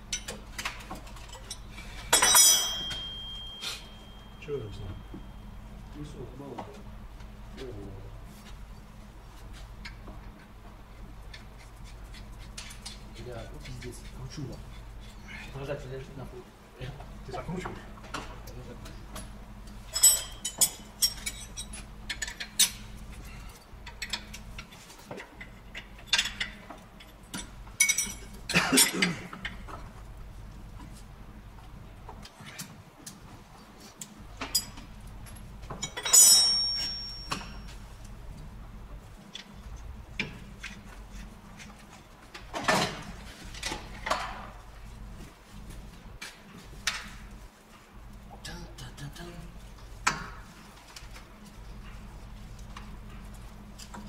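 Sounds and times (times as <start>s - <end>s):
low steady hum: 0.0s - 54.0s
hand tools clinking against metal: 0.1s - 5.5s, 19.8s - 29.8s, 34.4s - 37.8s.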